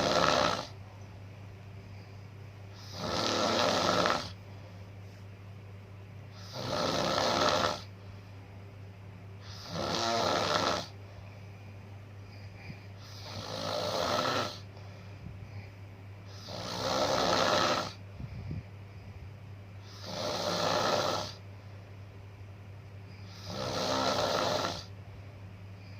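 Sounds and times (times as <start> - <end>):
person snoring: 0.0 - 0.7, 2.8 - 4.4, 6.3 - 7.9, 9.4 - 11.0, 12.7 - 14.7, 16.3 - 18.0, 19.8 - 21.4, 23.3 - 24.9
steady low hum: 0.0 - 25.9.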